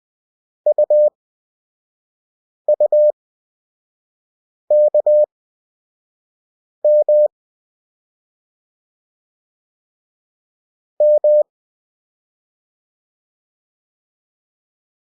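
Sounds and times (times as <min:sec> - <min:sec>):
morse code beeps: 0:00.7 - 0:01.1, 0:02.7 - 0:03.1, 0:04.7 - 0:05.3, 0:06.9 - 0:07.3, 0:11.0 - 0:11.4.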